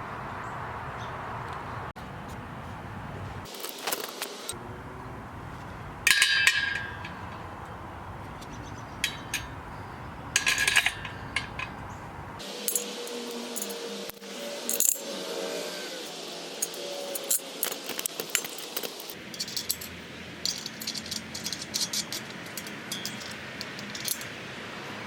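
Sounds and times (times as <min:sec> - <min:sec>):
metal parts clattering: 0:03.5 - 0:04.6, 0:06.0 - 0:09.7, 0:10.3 - 0:12.0, 0:12.6 - 0:15.2, 0:16.0 - 0:24.4
light metallic clinks: 0:05.4 - 0:13.8, 0:16.0 - 0:24.4.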